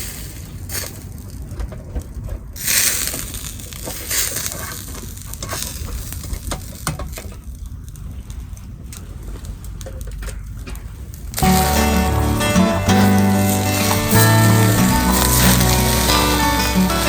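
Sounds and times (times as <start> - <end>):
fire popping: 11.4 - 17.0
meat sizzling on a grill: 11.4 - 17.0.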